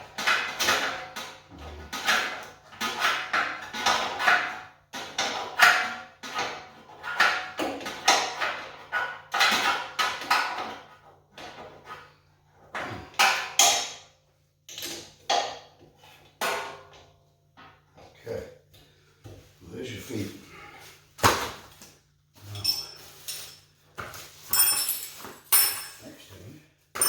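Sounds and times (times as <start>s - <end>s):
wrench clinking and scraping on bolts: 22.4s - 26.2s.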